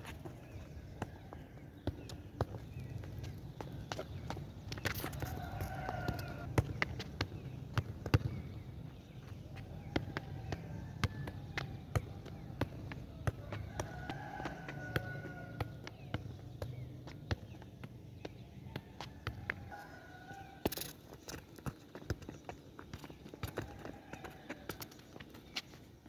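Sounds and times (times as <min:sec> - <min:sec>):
rooster crowing: 0:05.3 - 0:06.5, 0:13.4 - 0:15.8.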